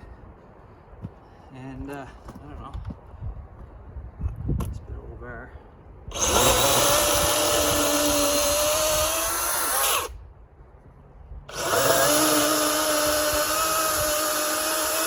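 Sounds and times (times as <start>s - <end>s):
battery chainsaw whining: 6.1s - 10.2s, 11.5s - 15.0s.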